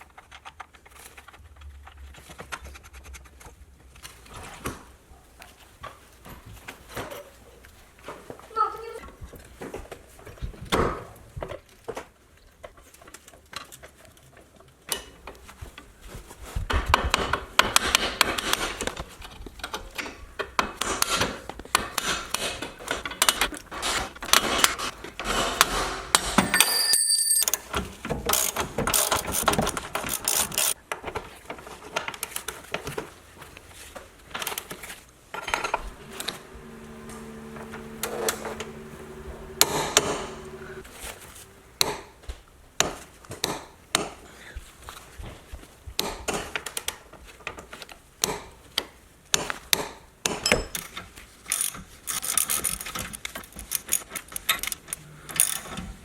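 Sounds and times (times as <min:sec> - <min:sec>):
steady hum: 0:35.8 - 0:40.9.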